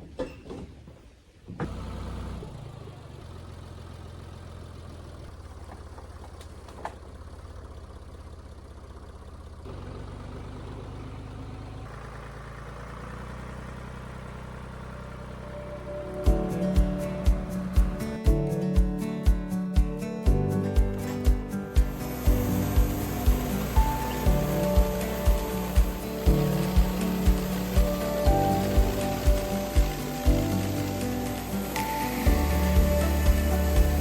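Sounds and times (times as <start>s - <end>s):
vehicle engine running at low speed: 1.4s - 34.0s.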